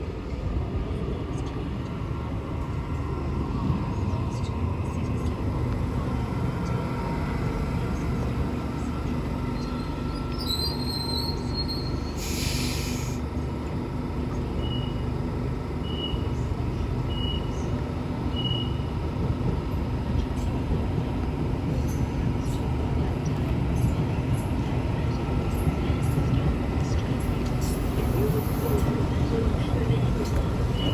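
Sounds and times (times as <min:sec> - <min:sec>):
train rumbling: 0:00.0 - 0:30.9
train wheel squeal: 0:09.5 - 0:13.2, 0:18.3 - 0:18.9, 0:30.7 - 0:30.9.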